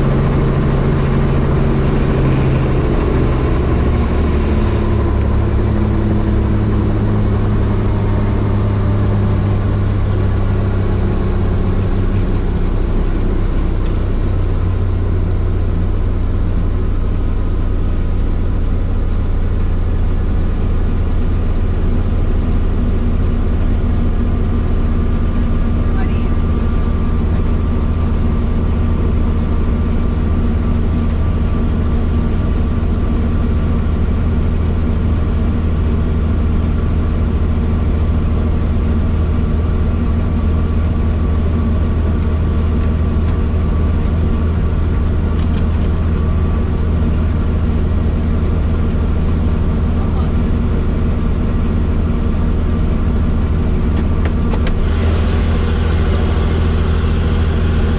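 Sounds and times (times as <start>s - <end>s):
helicopter engine and rotor hum: 0.0s - 57.9s
thin steady whine: 24.3s - 57.9s.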